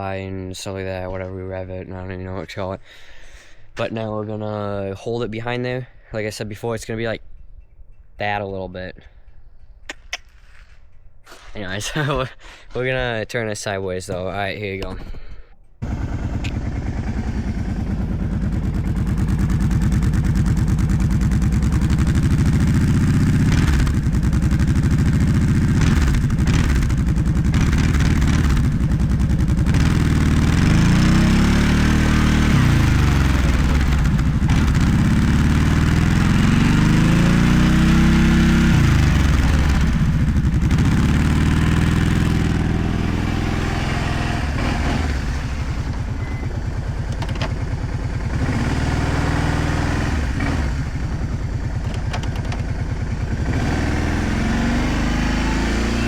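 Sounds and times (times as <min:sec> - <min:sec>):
atv engine revving: 0:15.8 - 0:56.0.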